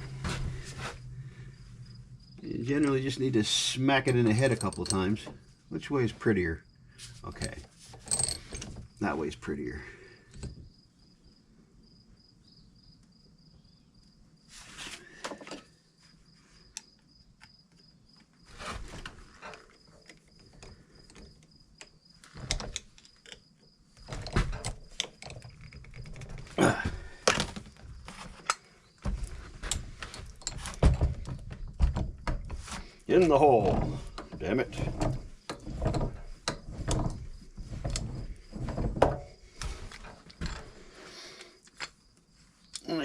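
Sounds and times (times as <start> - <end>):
metal clicks and clinks of vise: 4.0 - 5.3, 7.3 - 8.7.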